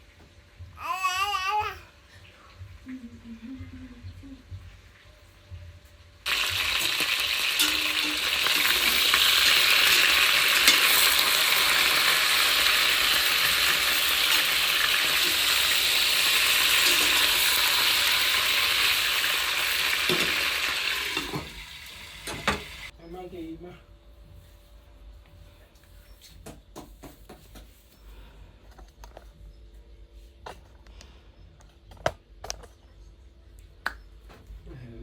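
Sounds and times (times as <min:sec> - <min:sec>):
food sizzling in a frying pan: 0:06.3 - 0:22.9.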